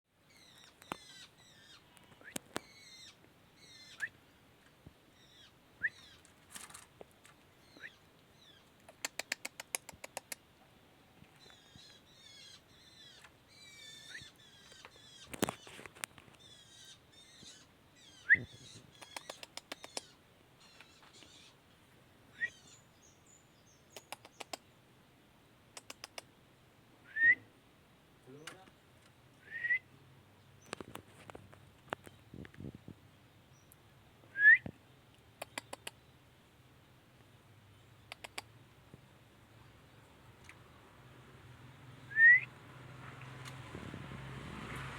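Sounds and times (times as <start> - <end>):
shrike calling: 0.3 - 4.2, 11.4 - 15.8.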